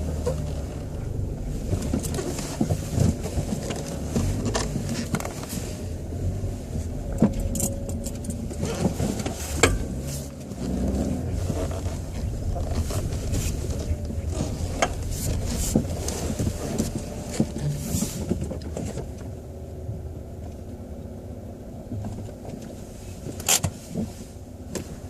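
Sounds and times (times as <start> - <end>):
steering column clanking: 0.0 - 19.5
car engine low hum: 0.0 - 25.0.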